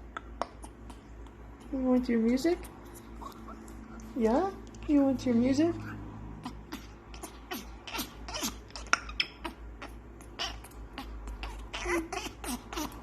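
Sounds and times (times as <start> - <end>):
parrot mouth clicks: 0.0 - 1.7.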